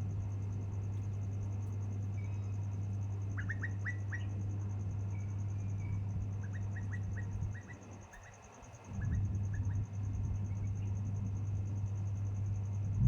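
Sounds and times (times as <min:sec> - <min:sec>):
insect trilling: 0:00.0 - 0:10.9
bird chirps: 0:03.3 - 0:04.4, 0:05.1 - 0:09.8.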